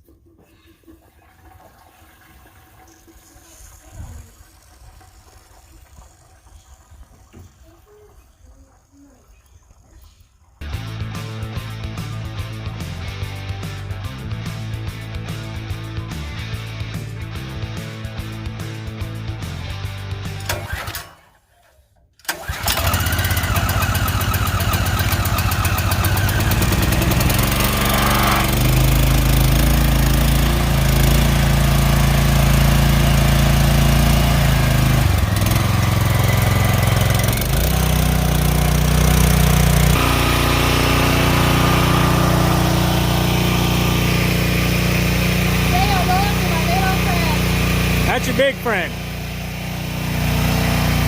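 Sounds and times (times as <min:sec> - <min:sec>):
petrol engine starting and running: 0:10.6 - 0:51.0.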